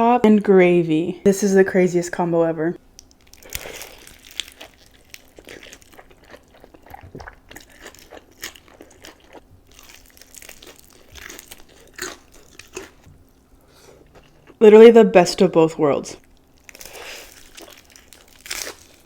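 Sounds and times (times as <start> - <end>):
crunchy bite of fried chicken: 3.0 - 13.1, 16.3 - 19.0
crunchy chewing: 3.0 - 14.6, 16.2 - 19.0.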